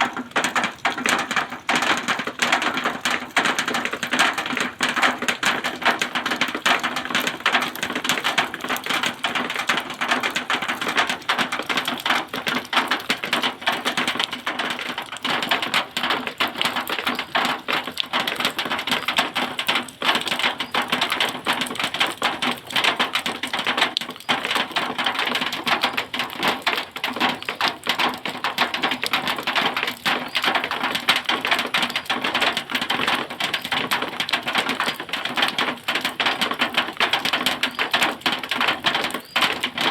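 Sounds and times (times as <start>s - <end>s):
rain on metal sheeting: 0.0s - 39.9s.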